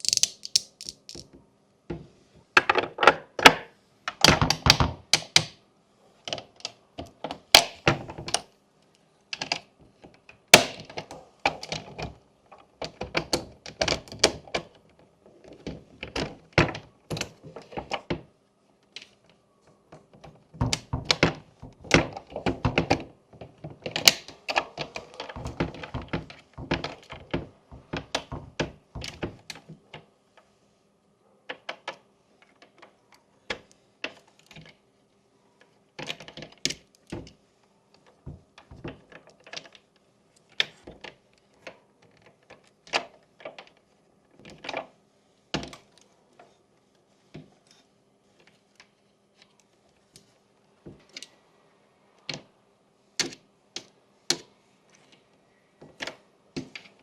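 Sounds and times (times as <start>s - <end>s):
plastic pieces clicking: 0.0s - 1.4s.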